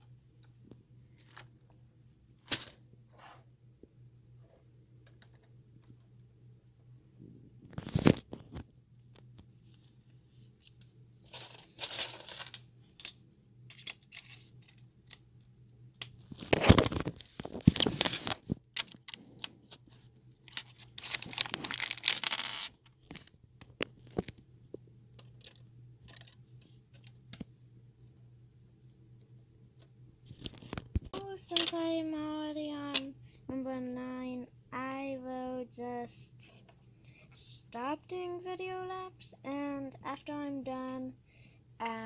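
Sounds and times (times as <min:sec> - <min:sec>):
rummaging rattles: 0:20.5 - 0:24.4.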